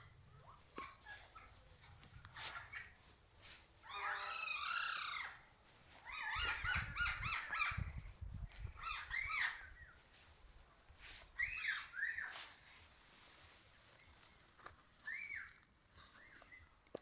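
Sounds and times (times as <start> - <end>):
animal calls: 3.8 - 7.9, 8.7 - 10.0, 11.4 - 12.6, 13.9 - 16.7.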